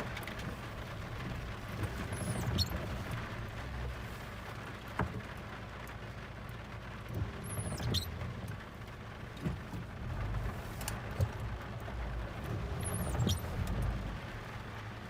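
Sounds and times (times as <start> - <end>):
vehicle engine low rumble: 0.0 - 15.0
high falling squeaks: 7.5 - 8.2, 12.8 - 13.7.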